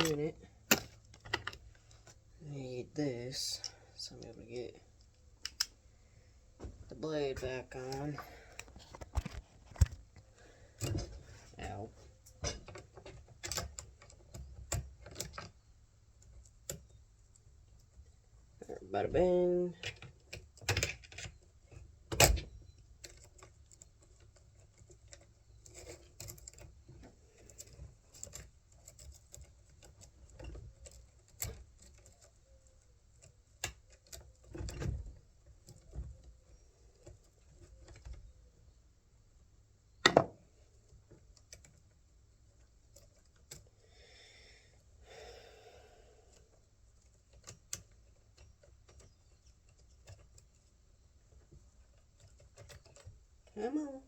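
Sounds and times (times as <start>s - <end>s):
tools and metal parts clicking: 0.0s - 1.7s, 19.8s - 38.3s, 51.3s - 53.6s.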